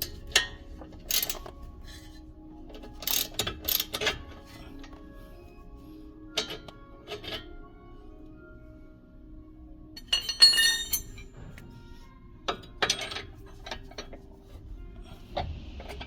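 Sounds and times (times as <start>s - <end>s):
metal tools clinking: 0.0s - 5.0s, 10.0s - 11.4s, 12.5s - 14.2s.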